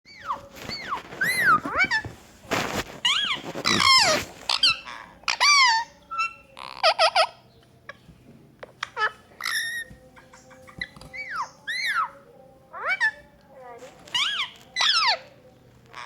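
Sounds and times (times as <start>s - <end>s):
parrot squawking and whistling: 0.1s - 2.1s, 3.0s - 7.4s, 14.1s - 15.3s.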